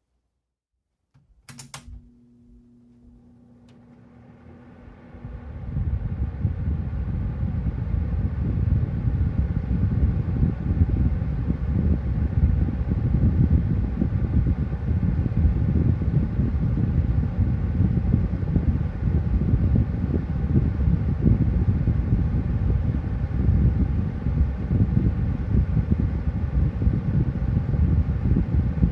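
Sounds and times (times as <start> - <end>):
faint even hum: 1.2 - 11.9
box fan running: 1.2 - 28.9.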